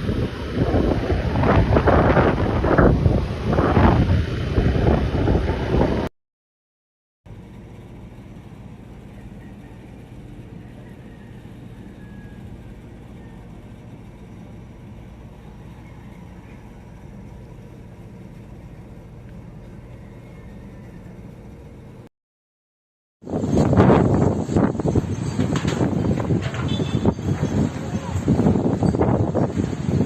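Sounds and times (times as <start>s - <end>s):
vehicle engine running: 7.3s - 22.1s.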